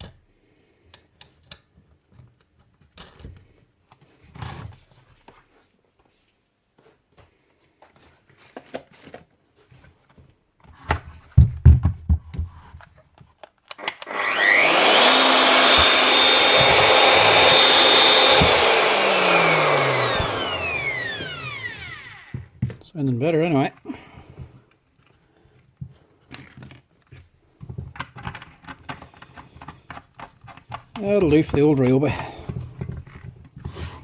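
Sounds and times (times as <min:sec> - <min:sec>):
knocks and clicks handling tool: 0:10.9 - 0:22.8
router motor whining: 0:13.8 - 0:22.5.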